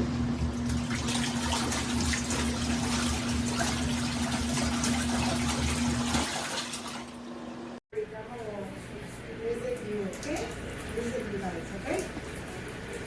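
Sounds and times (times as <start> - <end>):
water running into tub: 0.0 - 7.8.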